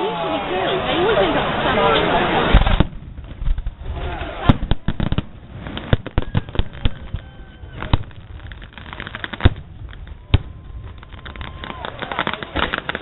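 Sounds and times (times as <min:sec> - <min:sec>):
fireworks and firecrackers banging: 0:01.1 - 0:13.0.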